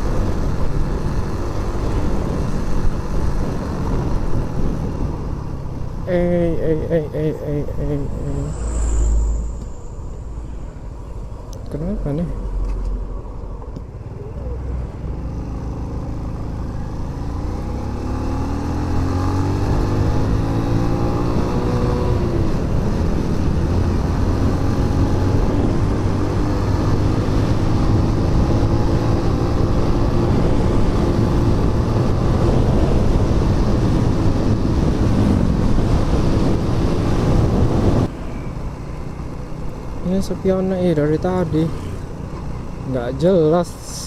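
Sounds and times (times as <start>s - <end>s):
wind and road noise: 0.0s - 44.0s
motorcycle engine revving: 14.8s - 38.1s.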